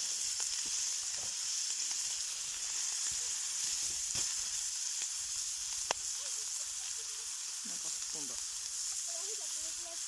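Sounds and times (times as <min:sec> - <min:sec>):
sausages sizzling in a skillet: 0:00.0 - 0:10.0.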